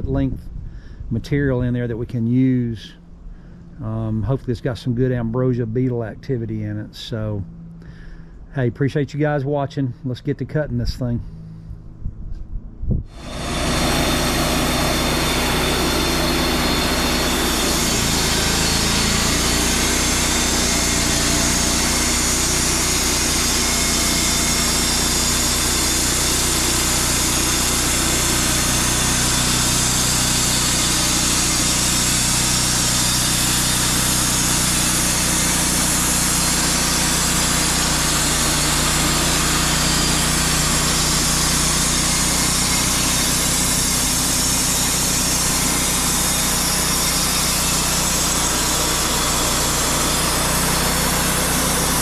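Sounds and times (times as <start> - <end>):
band blade rasping through wood: 13.1 - 52.0
sawmill engine running: 13.1 - 52.0.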